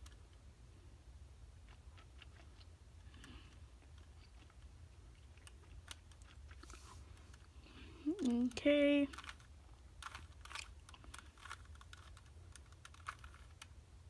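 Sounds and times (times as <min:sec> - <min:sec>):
low steady hum: 0:00.0 - 0:14.0
puzzle cube clicking: 0:09.1 - 0:13.7.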